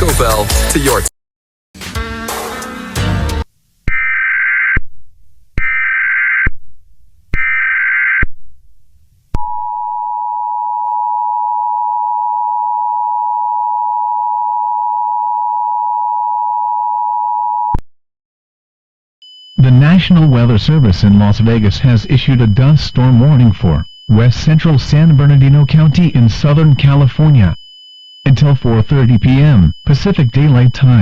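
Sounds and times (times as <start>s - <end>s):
data tone bursts: 19.2s - 31.0s
two-tone attention signal: 19.2s - 31.0s.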